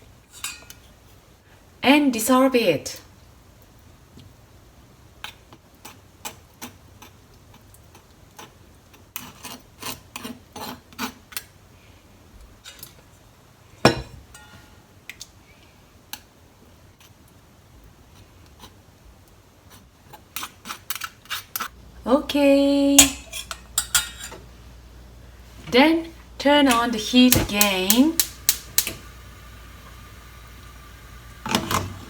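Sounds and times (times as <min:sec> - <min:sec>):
utensil clicking and scraping pot: 0:05.2 - 0:11.5, 0:18.1 - 0:18.8, 0:19.6 - 0:21.8, 0:26.7 - 0:29.0.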